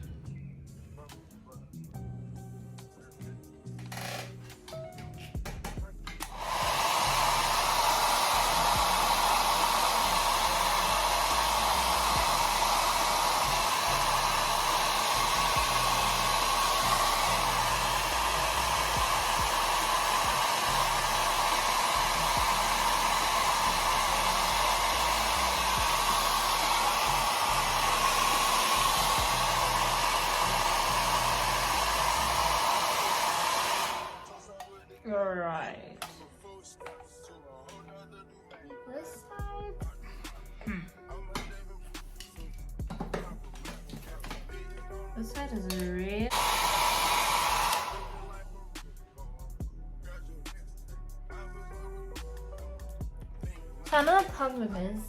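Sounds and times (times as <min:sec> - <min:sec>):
hair dryer blowing: 0:06.2 - 0:34.6, 0:42.8 - 0:44.4, 0:45.2 - 0:48.4, 0:53.9 - 0:54.8.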